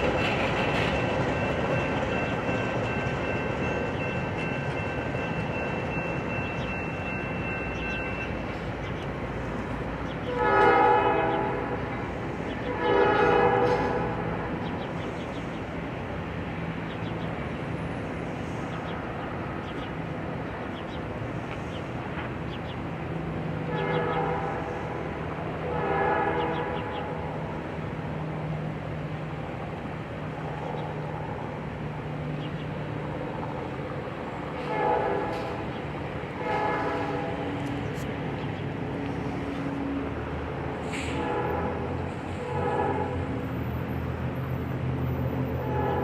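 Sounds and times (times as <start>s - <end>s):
train rumbling: 0.0s - 46.0s
train horn blasts: 10.2s - 11.9s, 12.6s - 14.6s, 23.6s - 27.4s, 34.5s - 37.7s, 41.0s - 43.7s, 45.4s - 46.0s.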